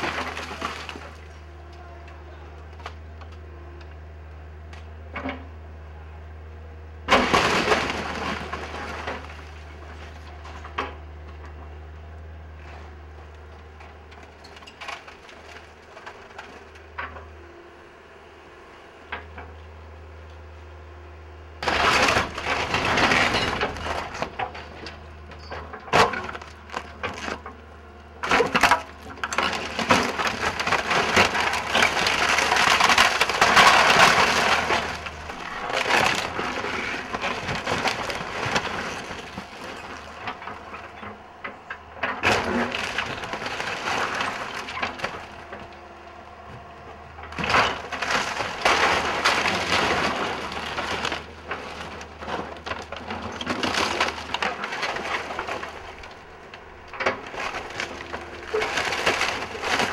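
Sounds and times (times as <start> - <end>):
timber cracking and crashing: 0.0 - 1.4, 7.1 - 11.0, 14.1 - 17.2, 21.6 - 27.6, 28.2 - 45.8, 47.2 - 59.9.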